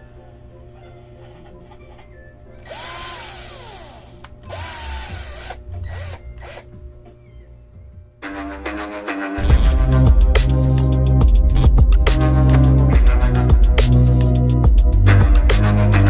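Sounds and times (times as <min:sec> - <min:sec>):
music: 0:00.0 - 0:16.0
cordless drill motor whirring: 0:02.6 - 0:06.7.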